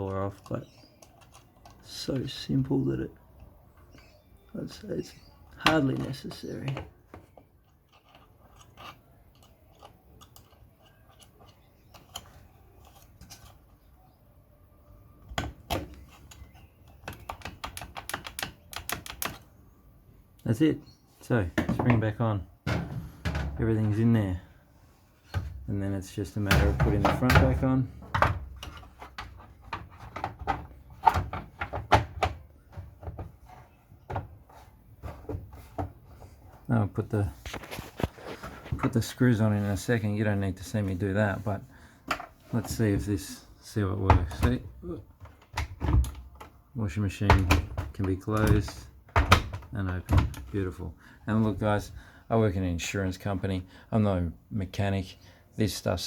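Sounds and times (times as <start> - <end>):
plastic and metal parts clicking: 0.0 - 2.4, 5.2 - 13.9, 15.2 - 19.5.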